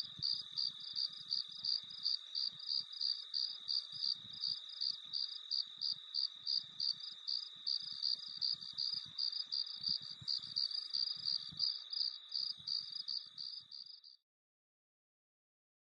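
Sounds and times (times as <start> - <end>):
crickets chirping: 0.0 - 14.2.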